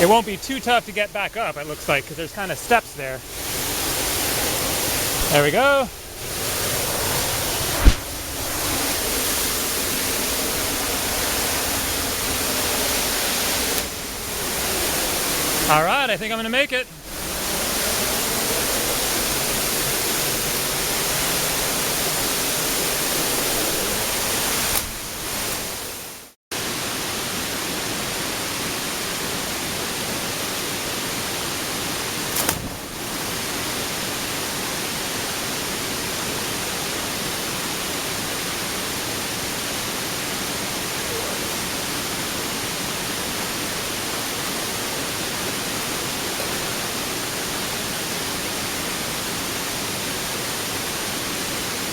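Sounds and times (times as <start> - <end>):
waterfall rushing: 0.0 - 32.3
short knock: 7.8 - 8.7.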